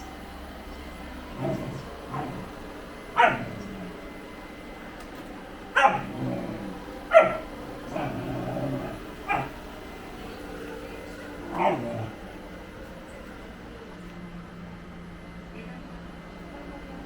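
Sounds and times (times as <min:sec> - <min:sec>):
dog barking: 0:01.3 - 0:04.0, 0:05.8 - 0:09.6, 0:11.4 - 0:12.2.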